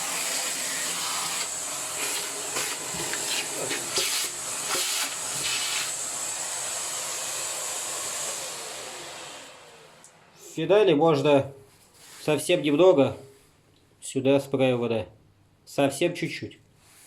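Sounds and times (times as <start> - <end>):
vacuum cleaner whining: 0.0 - 10.5.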